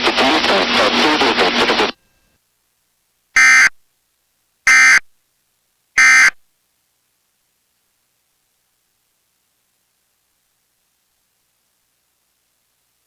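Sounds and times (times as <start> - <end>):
harsh digital data squawks: 3.4 - 3.7, 4.7 - 5.0, 6.0 - 6.4.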